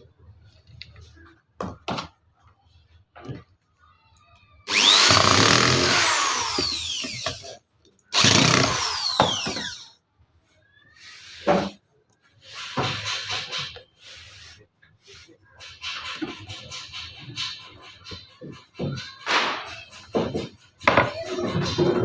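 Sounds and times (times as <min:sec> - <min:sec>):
power tool whining: 0:04.7 - 0:07.5, 0:08.1 - 0:09.9.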